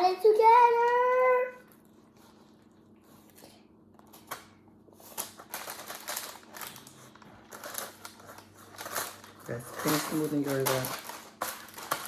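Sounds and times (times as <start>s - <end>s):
crackly scraping: 5.0s - 12.0s
cereal crackling in a pan: 8.8s - 12.0s.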